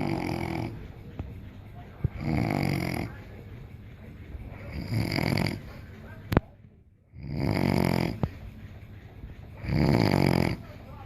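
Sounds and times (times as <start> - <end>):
person snoring heavily: 0.0 - 0.8, 2.1 - 3.2, 4.6 - 5.8, 7.1 - 8.3, 9.6 - 10.7.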